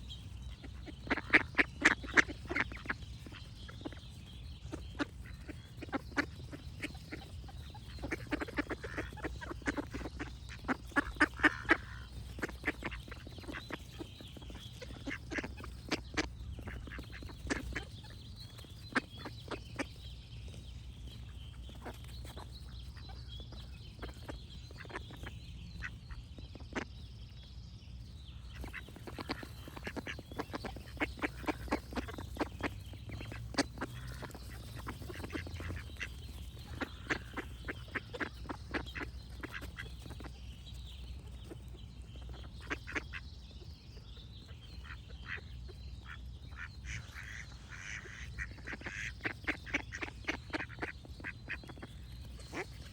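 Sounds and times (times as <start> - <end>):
ducks quacking: 0.0 - 27.0, 28.5 - 52.9
faint birds singing: 0.0 - 52.9.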